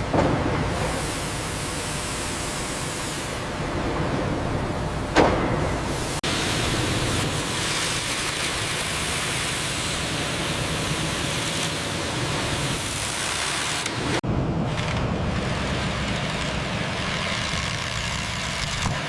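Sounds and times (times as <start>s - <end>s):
sawmill machinery hissing: 5.8s - 19.0s.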